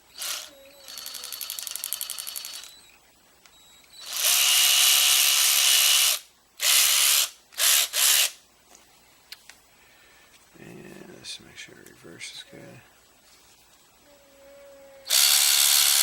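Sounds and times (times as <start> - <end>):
electric ratchet wrench whirring: 0.0 - 2.8, 4.0 - 8.4, 15.1 - 16.0.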